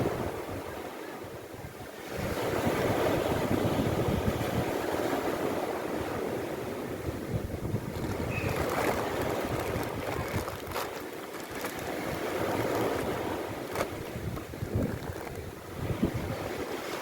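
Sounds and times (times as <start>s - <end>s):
sea waves washing ashore: 0.0s - 17.0s.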